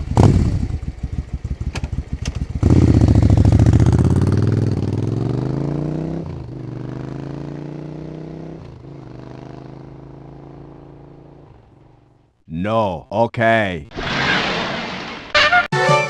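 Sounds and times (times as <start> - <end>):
engine sputtering and revving: 0.0 - 11.3.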